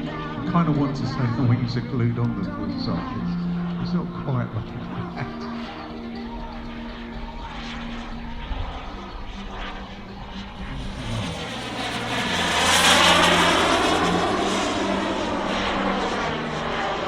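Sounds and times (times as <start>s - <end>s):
model jet turbine whine and rush: 8.5s - 17.0s.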